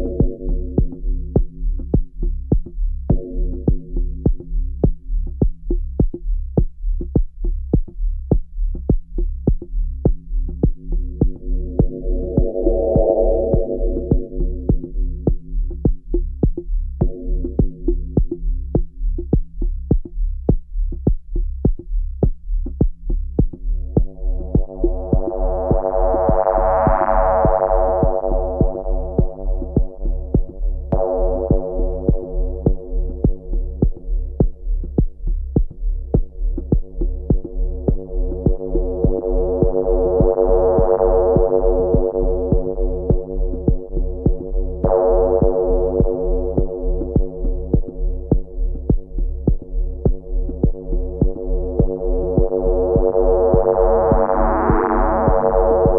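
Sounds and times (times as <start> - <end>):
low kick drum pulse: 0.0 - 55.9
sustained synth chord pad: 23.8 - 30.3, 30.9 - 33.7, 37.6 - 48.3, 50.3 - 55.9.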